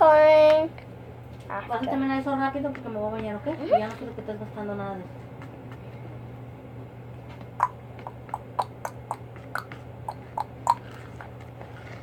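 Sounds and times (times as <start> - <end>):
steady low hum: 0.0 - 12.0
sharp clicks and taps: 7.6 - 10.9.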